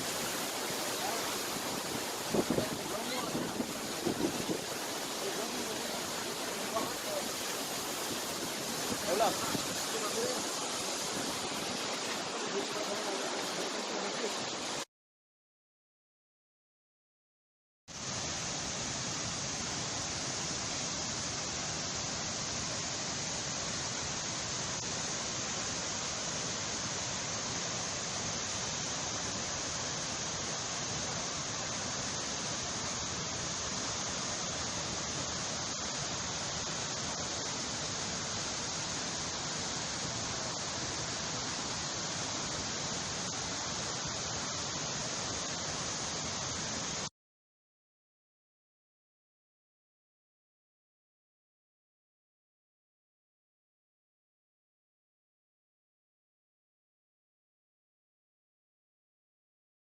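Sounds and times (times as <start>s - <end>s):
waterfall rushing: 0.0s - 14.9s, 17.9s - 47.1s.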